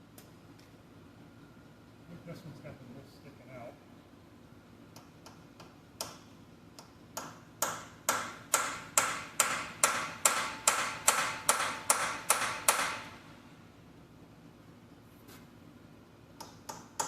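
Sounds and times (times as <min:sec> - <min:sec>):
hammer striking steel: 0:07.2 - 0:13.2.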